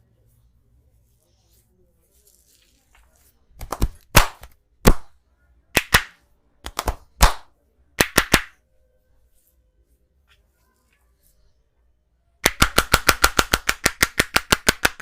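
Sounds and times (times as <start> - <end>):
hand slaps on body: 5.8 - 8.6.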